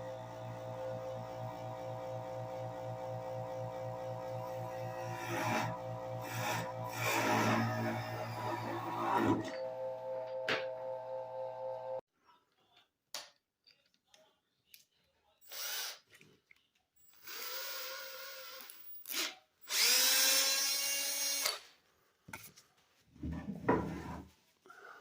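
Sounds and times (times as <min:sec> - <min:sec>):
small power tool whirring: 0:04.3 - 0:12.0, 0:15.4 - 0:16.0, 0:17.0 - 0:21.6.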